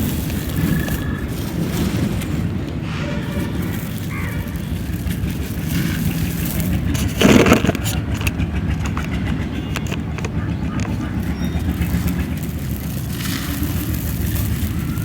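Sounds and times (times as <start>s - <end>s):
dry chunk crumbling between fingers: 0.0s - 15.0s
steady low rumble: 0.0s - 15.0s.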